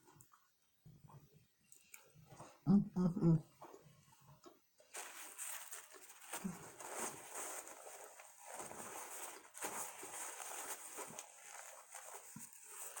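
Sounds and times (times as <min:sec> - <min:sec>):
chewing with crackly clicks: 0:01.7 - 0:02.1.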